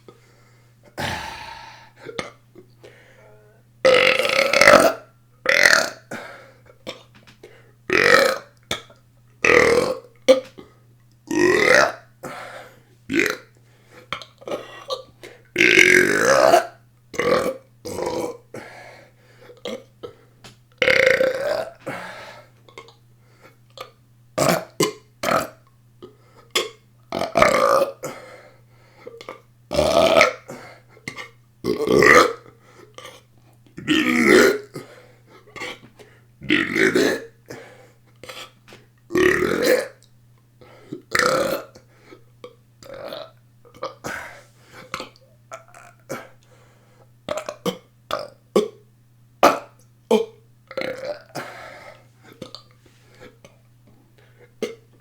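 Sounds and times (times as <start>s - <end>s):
faint steady hum: 0.0s - 55.0s
person burping: 1.0s - 2.4s, 3.9s - 6.3s, 7.9s - 8.5s, 9.4s - 10.0s, 15.6s - 18.4s, 20.8s - 22.0s, 29.7s - 30.5s, 33.8s - 34.8s, 36.4s - 37.4s, 39.1s - 40.0s, 41.1s - 41.7s, 42.8s - 44.3s, 45.0s - 46.3s, 49.4s - 51.7s, 54.6s - 54.9s.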